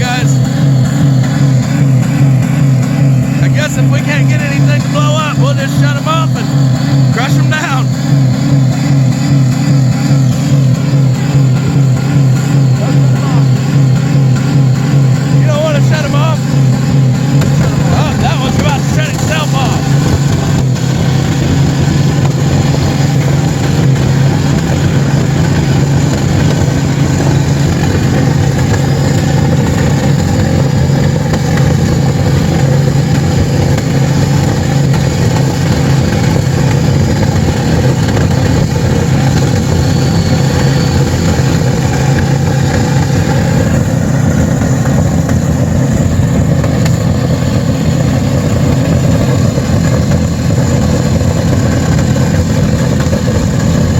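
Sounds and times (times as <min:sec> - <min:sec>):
car engines at high revs: 0:00.0 - 0:53.9.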